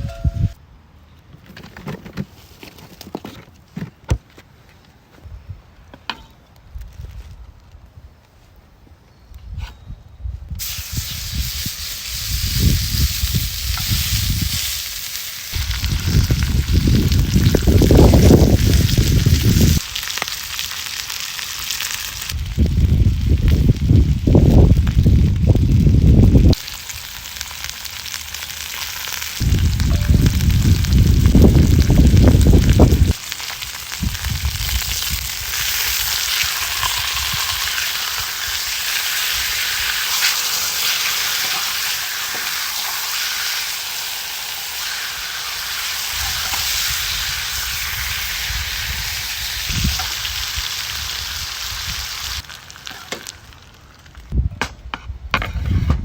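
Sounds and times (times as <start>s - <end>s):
wind buffeting microphone: 9.4s - 14.6s, 15.5s - 19.9s, 22.3s - 26.6s, 29.4s - 33.2s, 34.0s - 36.0s, 46.1s - 52.4s
sizzling hiss with crackles: 10.6s - 54.4s.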